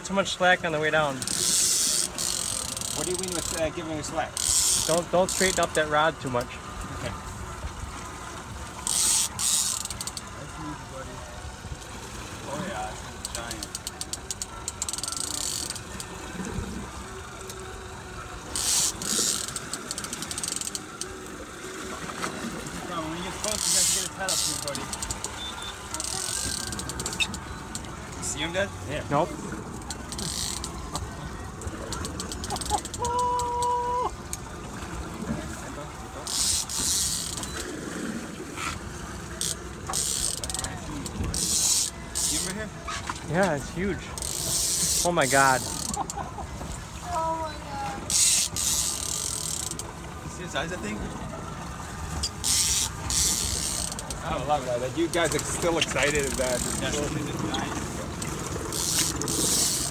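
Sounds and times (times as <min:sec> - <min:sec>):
reel drag buzzing rattle: 0:00.8 - 0:10.5, 0:12.9 - 0:35.0, 0:36.1 - 0:46.8, 0:48.0 - 0:59.9
fishing reel clicking: 0:01.2 - 0:05.9, 0:08.8 - 0:10.3, 0:13.2 - 0:16.1, 0:18.5 - 0:21.1, 0:23.5 - 0:27.9, 0:29.8 - 0:31.0, 0:31.6 - 0:33.7, 0:36.2 - 0:37.6, 0:39.4 - 0:42.6, 0:44.2 - 0:46.2, 0:48.1 - 0:49.9, 0:52.2 - 0:54.3, 0:55.1 - 0:59.9.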